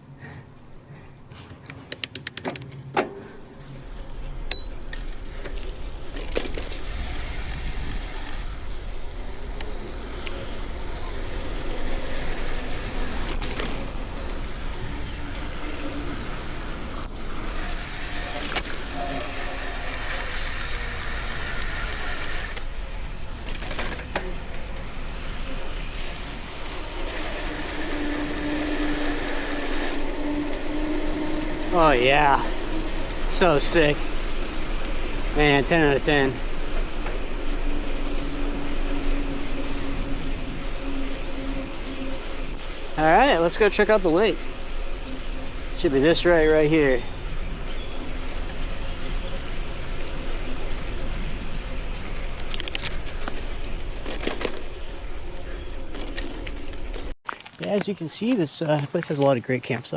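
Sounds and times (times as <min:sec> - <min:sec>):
bicycle rolling: 0:00.0 - 0:59.9
sharp clicks: 0:01.6 - 0:02.9.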